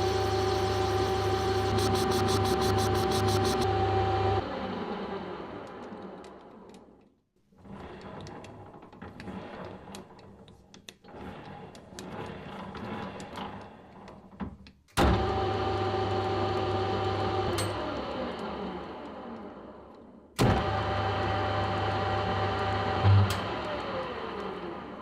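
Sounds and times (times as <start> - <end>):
lathe motor humming and whining: 0.0 - 5.6.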